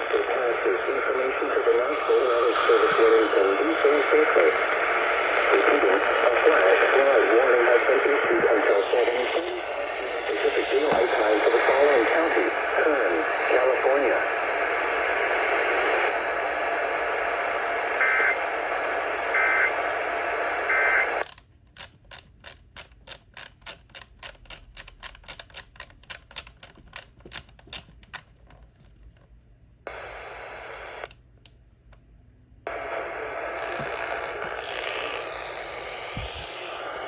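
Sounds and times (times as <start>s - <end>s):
radio hiss: 0.0s - 21.3s, 29.9s - 31.2s, 32.7s - 37.0s
sharp clicks: 21.2s - 29.0s, 31.0s - 32.0s.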